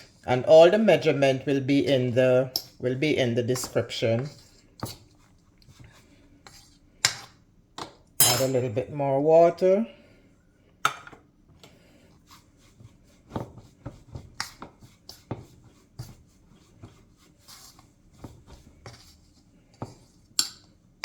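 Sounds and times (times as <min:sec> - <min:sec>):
fork tapping and scraping bowl: 0:02.5 - 0:02.8, 0:03.5 - 0:08.6, 0:13.3 - 0:16.2.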